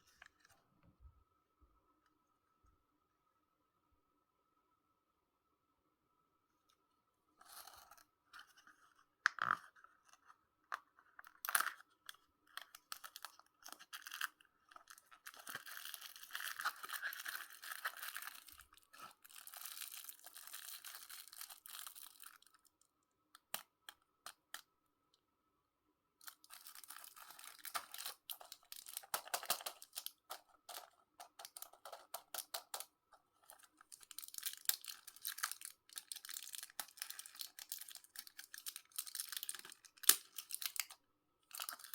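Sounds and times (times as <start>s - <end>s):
sweet wrappers crinkling: 12.6s - 22.7s, 26.2s - 41.9s.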